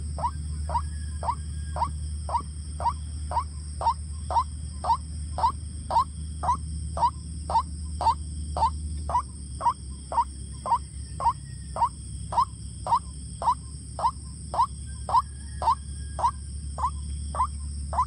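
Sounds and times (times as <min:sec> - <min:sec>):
waterhen calling: 0:09.6 - 0:18.0.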